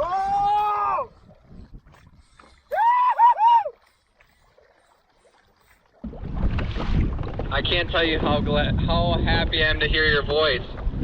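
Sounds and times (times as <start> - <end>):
person shouting excitedly: 0.0 - 1.1, 2.7 - 3.8
faint water and wind: 0.0 - 11.0.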